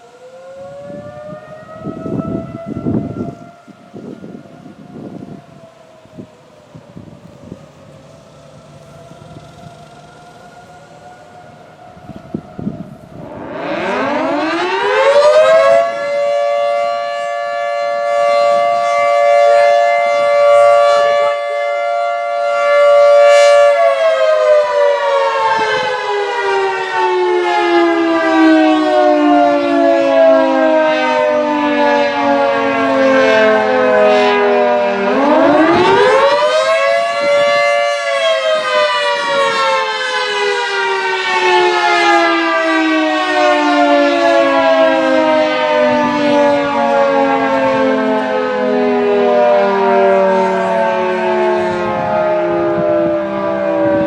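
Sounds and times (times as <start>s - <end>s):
dual-tone siren rising and falling: 0.0s - 54.0s.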